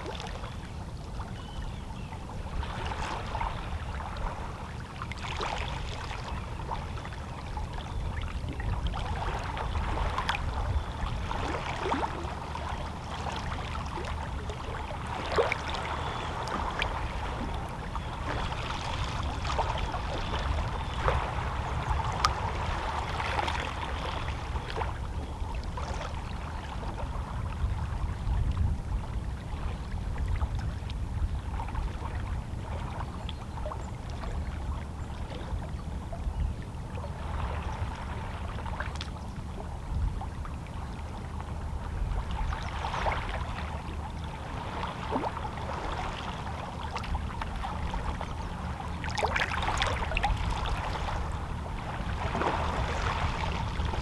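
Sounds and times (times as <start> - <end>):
sea waves lapping against rocks: 42.1 - 54.0.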